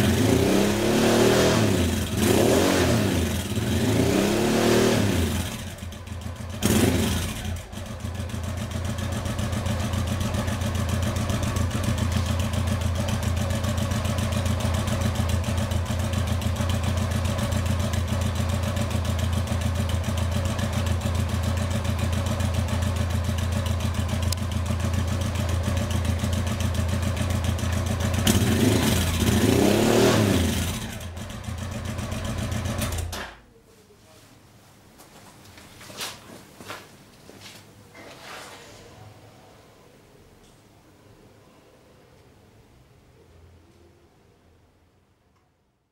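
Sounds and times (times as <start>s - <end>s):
motorcycle engine revving and idling: 0.0s - 33.4s.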